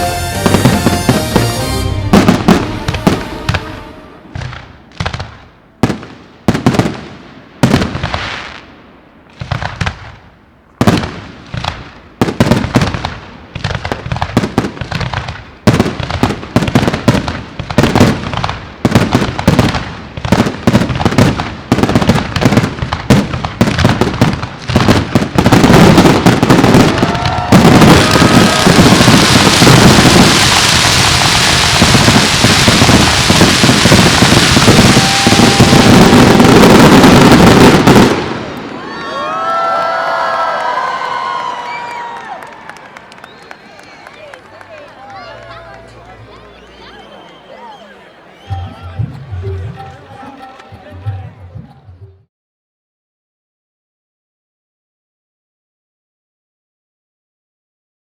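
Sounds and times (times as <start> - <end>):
firework crackling: 0.0 - 8.6, 10.8 - 47.8.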